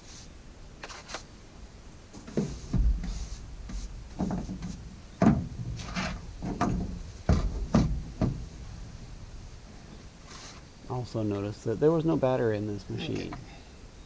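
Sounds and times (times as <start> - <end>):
rubbing sounds: 2.1 - 10.8
knocks on plastic: 4.1 - 8.5.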